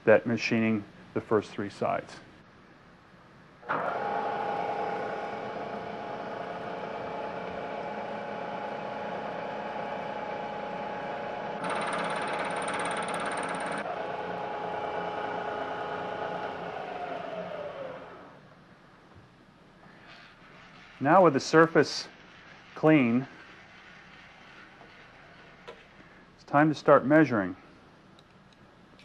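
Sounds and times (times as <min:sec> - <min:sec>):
milling machine spindle running: 0:03.7 - 0:18.4.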